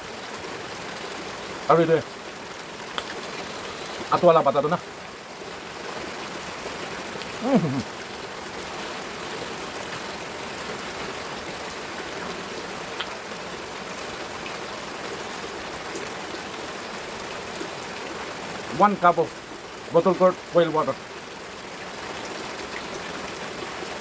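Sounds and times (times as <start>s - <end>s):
steady background hiss: 0.0s - 15.8s
person humming: 7.4s - 7.9s.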